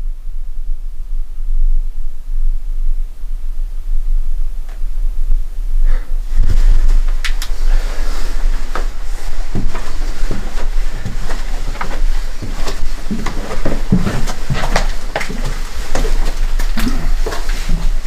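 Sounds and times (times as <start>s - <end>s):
steady low rumble: 0.0s - 18.0s
footsteps and movement: 3.9s - 18.0s.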